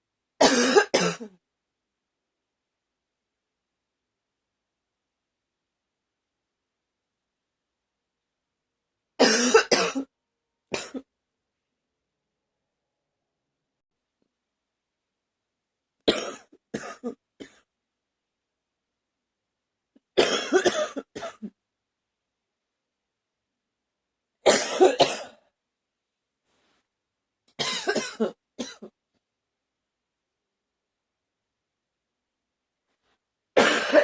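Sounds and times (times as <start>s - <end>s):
woman coughing: 0.4s - 1.4s, 9.2s - 10.1s, 16.1s - 17.6s, 20.2s - 21.6s, 24.5s - 25.4s, 27.6s - 28.9s, 33.6s - 34.0s.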